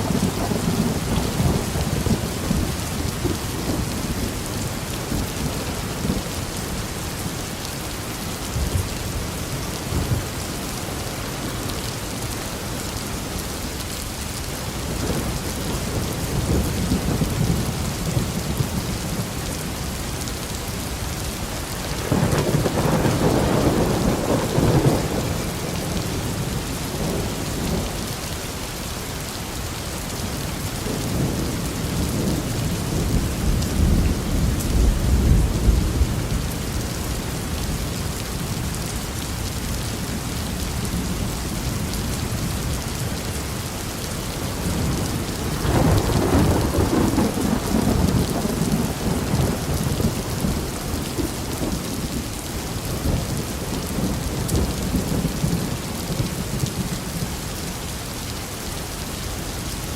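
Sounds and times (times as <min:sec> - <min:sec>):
steady rain falling: 0:00.0 - 0:59.9
thunder rumbling: 0:21.9 - 0:28.0, 0:44.4 - 0:52.2.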